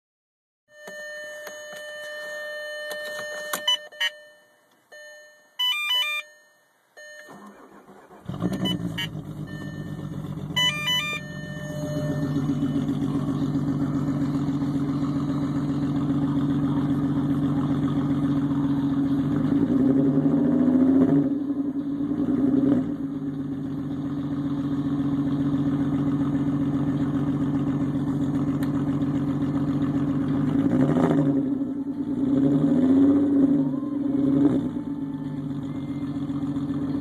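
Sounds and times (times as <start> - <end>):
car engine starting and idling: 0.8 - 37.0
electronic beeps and chimes: 8.4 - 14.6.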